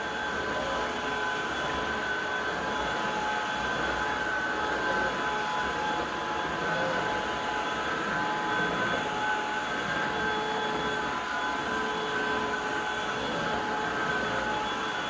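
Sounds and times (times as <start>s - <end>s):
stick vacuum cleaner running: 0.0s - 15.0s.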